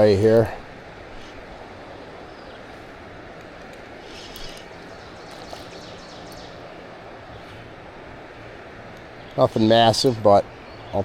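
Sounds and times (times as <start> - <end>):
light rain: 0.0 - 11.0
river water rushing: 0.0 - 11.0
faint ticks: 3.4 - 6.6.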